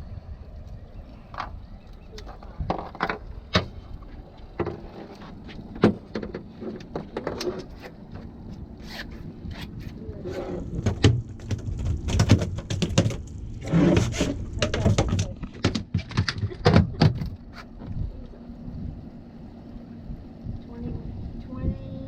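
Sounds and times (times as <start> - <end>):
knocks clicks and scrapes of handling: 4.5 - 18.0.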